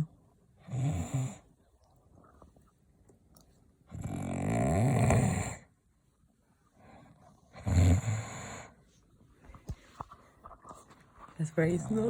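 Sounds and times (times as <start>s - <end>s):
man snoring loudly: 4.0s - 5.6s, 7.6s - 8.6s.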